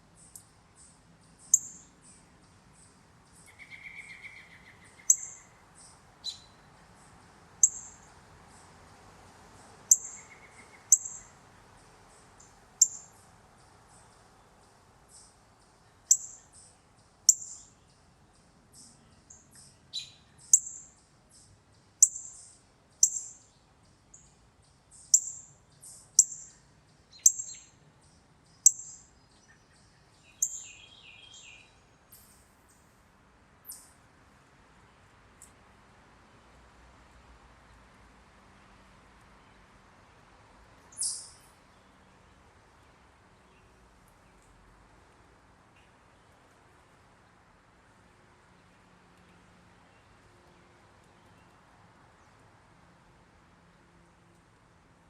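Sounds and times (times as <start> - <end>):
songbird chip calls: 0.2 - 8.6, 9.9 - 11.4, 12.1 - 13.2, 16.1 - 18.0, 18.8 - 23.5, 24.1 - 27.8, 28.5 - 31.8, 40.9 - 41.5.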